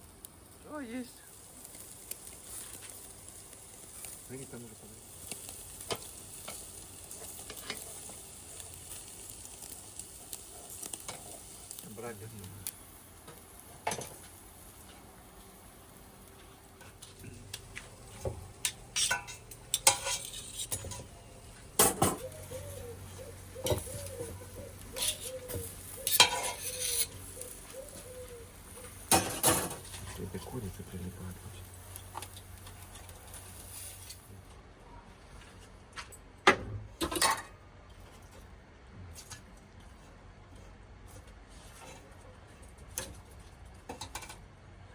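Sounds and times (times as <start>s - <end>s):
dishes and utensils clinking: 18.1s - 21.1s, 21.8s - 22.3s, 24.9s - 27.2s
metal utensils clinking and scraping: 18.1s - 28.2s, 28.8s - 30.9s, 37.0s - 37.6s.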